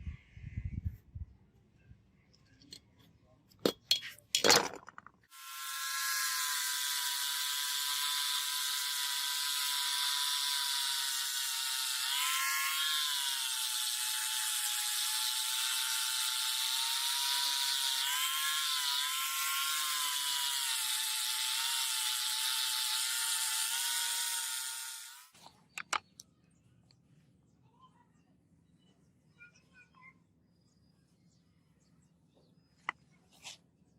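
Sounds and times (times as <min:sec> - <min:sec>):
power tool motor whining: 0:05.3 - 0:25.4.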